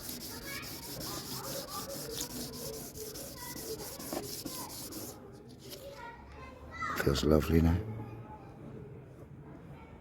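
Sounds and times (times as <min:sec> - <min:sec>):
sandpaper rubbing on bumper: 0:00.0 - 0:05.2.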